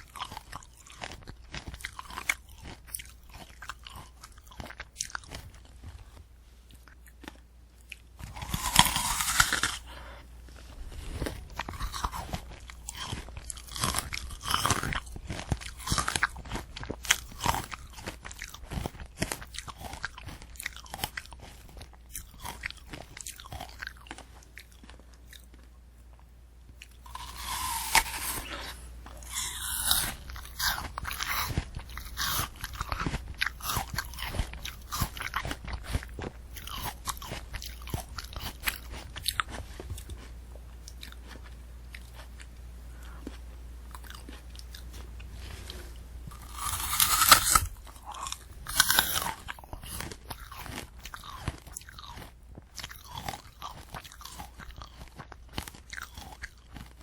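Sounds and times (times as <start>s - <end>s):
candy apple crunching: 0.0s - 57.0s.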